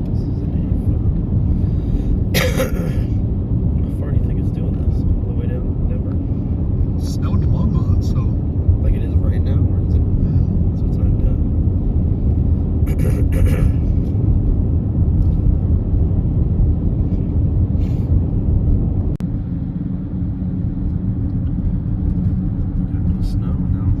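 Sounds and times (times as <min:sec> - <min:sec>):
low rumbling drone: 0:00.0 - 0:24.0.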